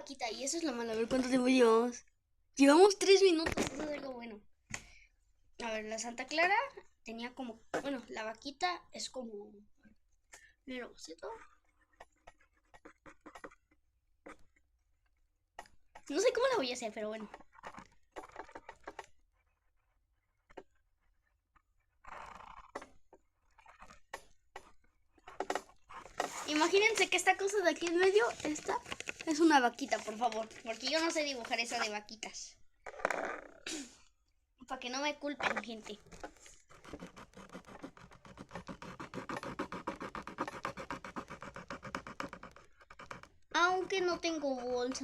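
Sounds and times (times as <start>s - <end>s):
marker scratching on paper: 10.7s - 14.6s, 15.6s - 20.7s, 23.5s - 32.0s, 35.2s - 45.0s.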